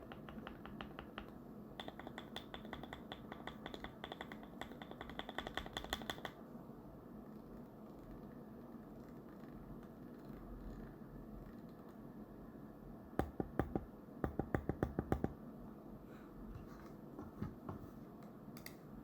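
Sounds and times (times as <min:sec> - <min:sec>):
mechanical keyboard typing: 0:00.0 - 0:06.4.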